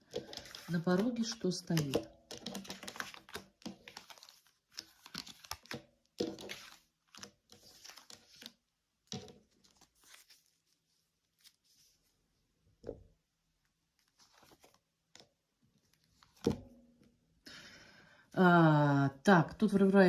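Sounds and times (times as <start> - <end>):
cards rustling and slapping: 0.0 - 12.1, 14.0 - 17.1.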